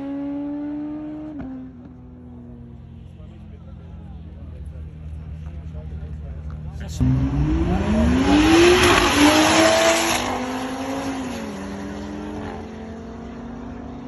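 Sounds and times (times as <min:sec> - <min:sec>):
exhaust and tyre noise: 0:00.0 - 0:14.0
car engine revving hard: 0:07.0 - 0:14.0.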